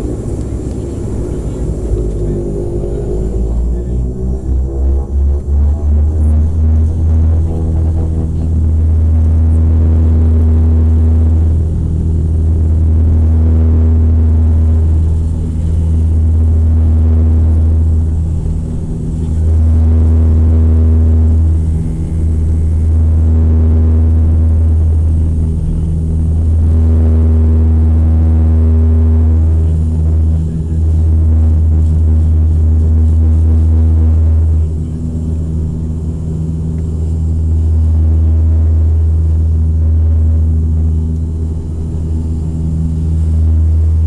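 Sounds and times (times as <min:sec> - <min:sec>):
electronic music with deep bass: 0:02.0 - 0:11.7, 0:16.1 - 0:18.4, 0:19.0 - 0:34.7.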